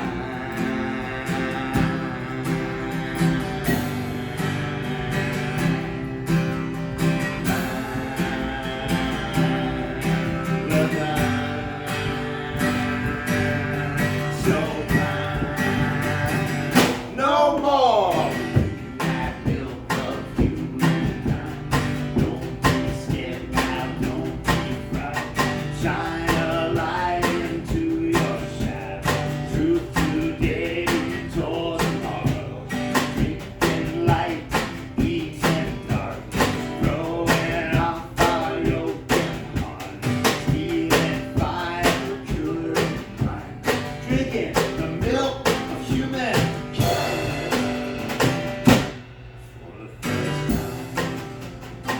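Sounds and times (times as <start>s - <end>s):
person singing: 0.0s - 6.2s, 7.4s - 47.8s
acoustic guitar strumming: 0.0s - 51.9s.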